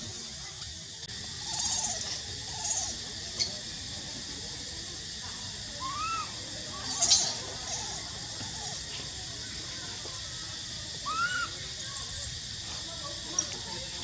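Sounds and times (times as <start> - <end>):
steady high hiss: 0.0 - 14.0
baby monkey crying: 1.4 - 2.9, 5.8 - 8.6.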